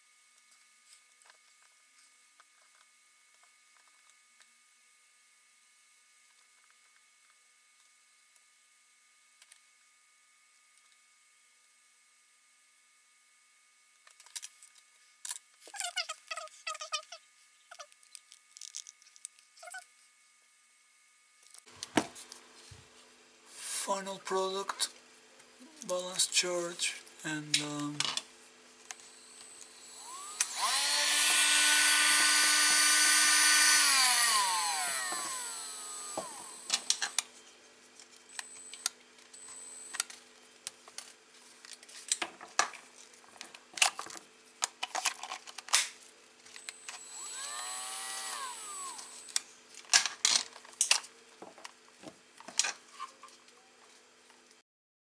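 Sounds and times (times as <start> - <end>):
rotary tool motor whine: 28.8 - 40.2, 46.4 - 49.8.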